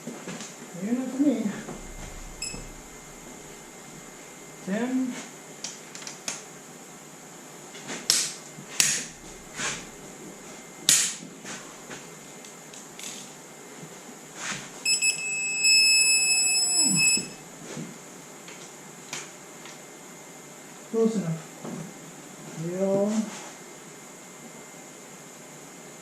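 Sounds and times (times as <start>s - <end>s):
electronic beep: 1.8s - 4.1s, 14.9s - 17.4s.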